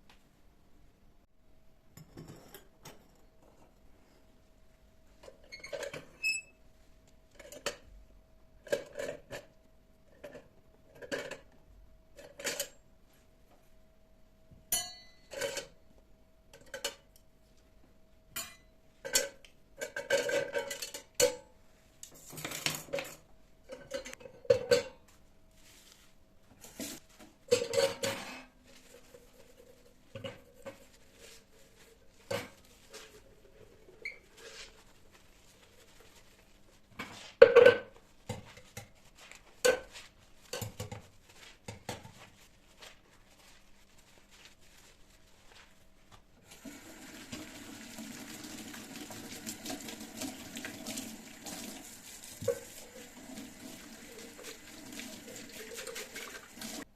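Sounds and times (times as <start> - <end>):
dishes and cutlery clinking: 1.9 - 3.8, 7.3 - 7.9, 12.2 - 12.8, 14.7 - 15.8, 16.5 - 17.2, 18.3 - 21.5, 22.5 - 25.1, 26.6 - 28.6.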